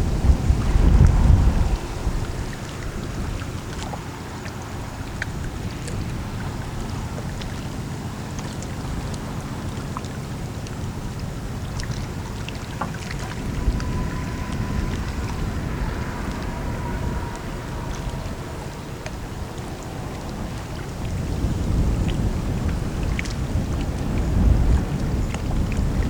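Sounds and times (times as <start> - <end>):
ship engine rumble: 0.0 - 26.0
wind buffeting microphone: 0.0 - 26.0
thin steady tone: 12.0 - 20.9.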